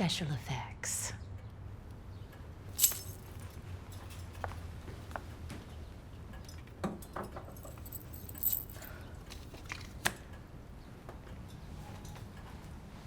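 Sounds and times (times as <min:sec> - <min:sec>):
low room hum: 0:00.0 - 0:13.0
metallic clinks of small objects: 0:02.7 - 0:04.4, 0:07.5 - 0:09.0.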